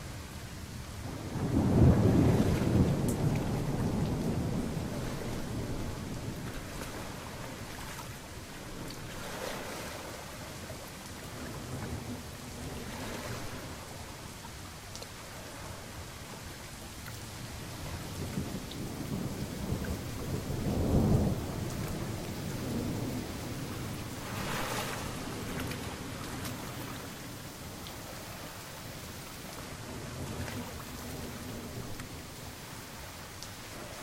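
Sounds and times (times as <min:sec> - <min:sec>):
steady rain: 0:00.0 - 0:34.0
thunder rumbling: 0:01.0 - 0:10.4, 0:17.3 - 0:34.0.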